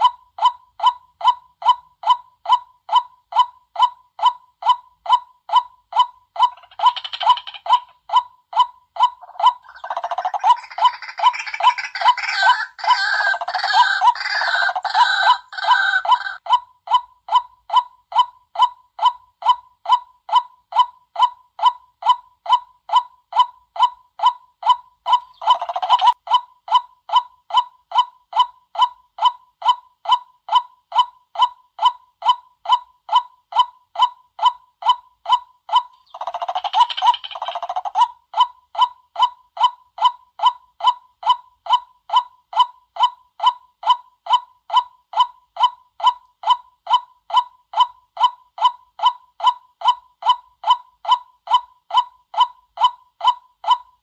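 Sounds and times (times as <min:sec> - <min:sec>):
harsh bird chattering: 0:06.4 - 0:08.1, 0:09.0 - 0:16.4, 0:24.6 - 0:26.2, 0:35.7 - 0:38.1
waterhen calling kwak: 0:09.2 - 0:16.4.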